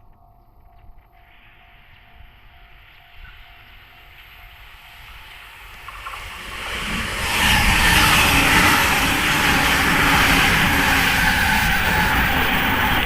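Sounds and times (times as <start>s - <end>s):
electric train approaching: 1.3s - 13.0s.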